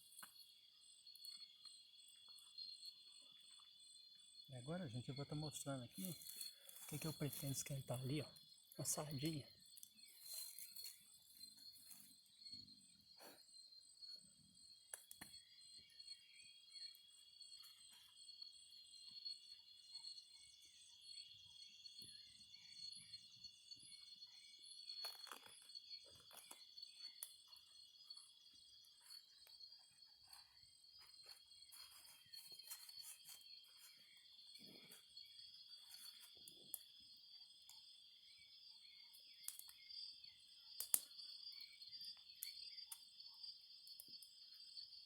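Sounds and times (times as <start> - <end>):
insects chirring: 0.0 - 45.0
faint clicks and snaps: 14.9 - 15.4, 39.4 - 39.8, 40.8 - 41.1.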